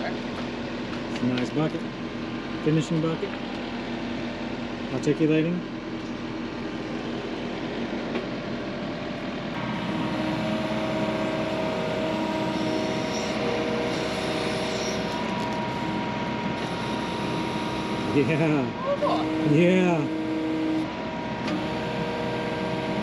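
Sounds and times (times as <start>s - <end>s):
diesel engine running: 0.0s - 23.0s
hydraulic whine: 0.0s - 23.0s.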